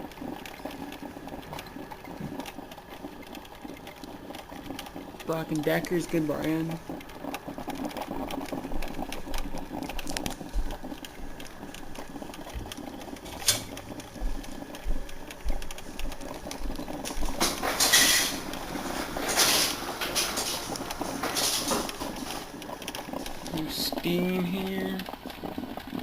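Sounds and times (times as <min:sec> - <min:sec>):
coffee maker crackling and sputtering: 0:00.0 - 0:26.0.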